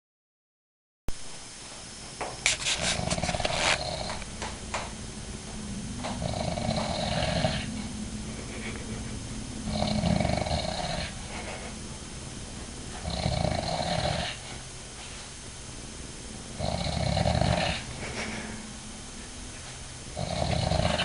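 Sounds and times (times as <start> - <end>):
man snoring: 2.9 - 4.2, 6.2 - 7.9, 9.6 - 11.7, 13.0 - 14.5, 16.6 - 18.6, 20.1 - 21.0.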